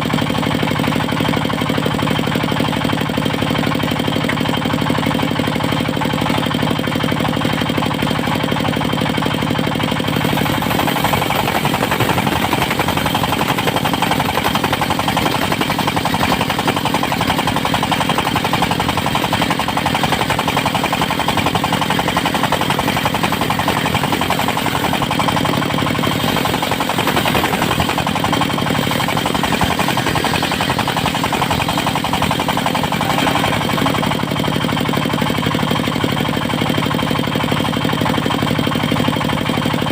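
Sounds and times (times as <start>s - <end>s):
sawmill engine running: 0.0s - 39.9s
circular saw cutting log: 5.7s - 35.5s.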